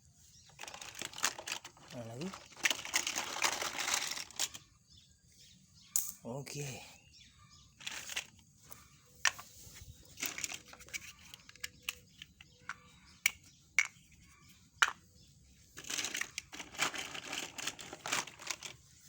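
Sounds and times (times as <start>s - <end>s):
rustling: 0.4s - 4.6s, 7.8s - 11.6s, 15.8s - 19.0s
plastic toy track clicking: 0.6s - 4.6s.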